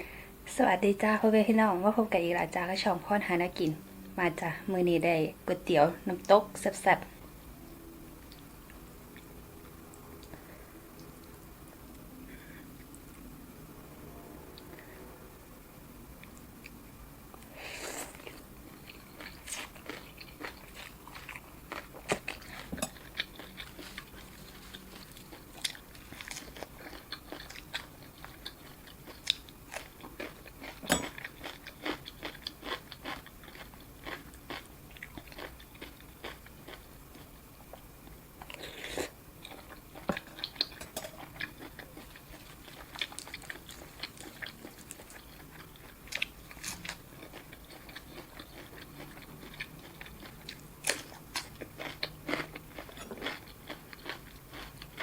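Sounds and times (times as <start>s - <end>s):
chewing and biting food: 18.2s - 38.6s, 39.4s - 55.0s.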